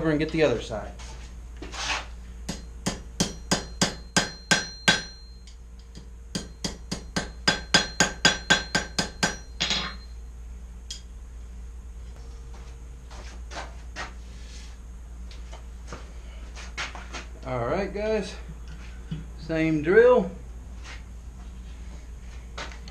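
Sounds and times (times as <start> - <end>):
hammer striking steel on anvil: 2.5 - 10.1
anvil ringing: 2.5 - 10.2.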